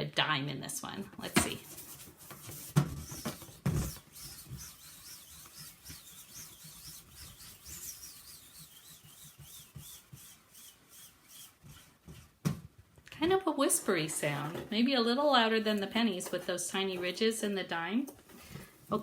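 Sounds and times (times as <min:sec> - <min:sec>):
coin spinning inside balloon: 0:03.9 - 0:10.0.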